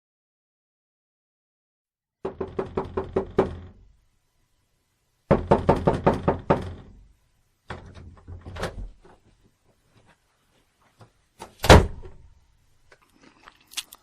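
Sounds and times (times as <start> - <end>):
heavy knocking on a door: 2.2 - 3.8, 5.3 - 7.1.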